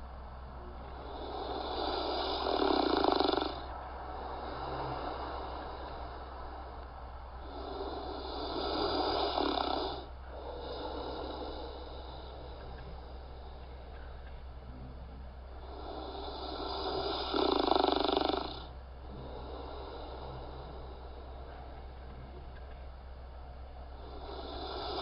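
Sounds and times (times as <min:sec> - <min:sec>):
steady low hum: 0:00.0 - 0:25.0
person snoring: 0:00.7 - 0:06.8, 0:07.4 - 0:13.6, 0:15.5 - 0:21.9, 0:24.0 - 0:25.0.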